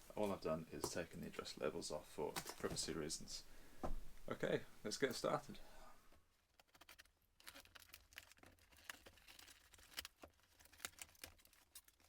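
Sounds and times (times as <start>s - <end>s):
package rustling and scraping: 6.5s - 12.0s.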